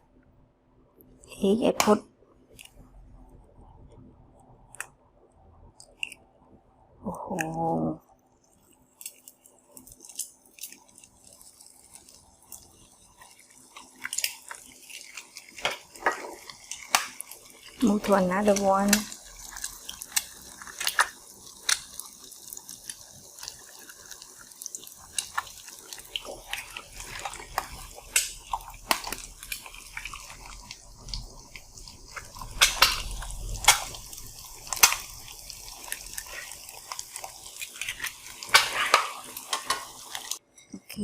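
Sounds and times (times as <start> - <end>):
eggs sizzling in a pan: 1.2 - 40.6
utensil scraping a pan: 37.7 - 40.4.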